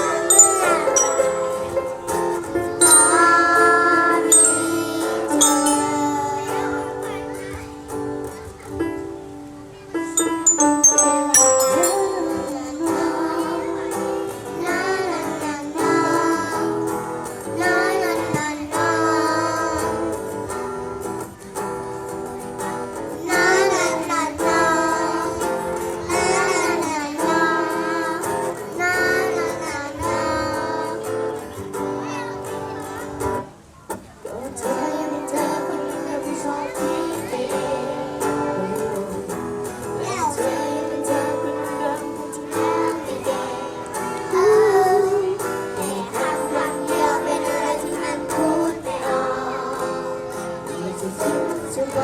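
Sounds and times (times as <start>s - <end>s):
backing music: 0.0s - 6.7s, 10.2s - 13.2s
high chiming notes: 0.0s - 6.9s, 10.2s - 13.2s
children singing pop song: 0.0s - 9.1s, 10.2s - 21.3s, 22.0s - 33.5s, 34.2s - 52.0s.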